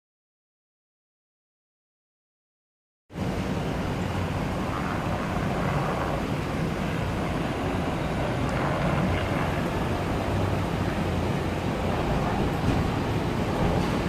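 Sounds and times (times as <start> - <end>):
helicopter flying: 3.1 - 14.0.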